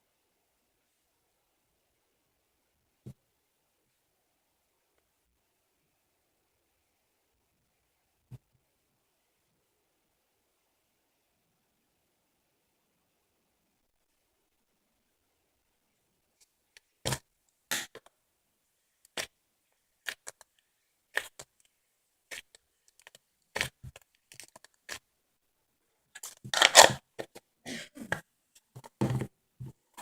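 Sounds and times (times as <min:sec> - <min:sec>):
slime clicking and squelching: 0:20.0 - 0:21.7.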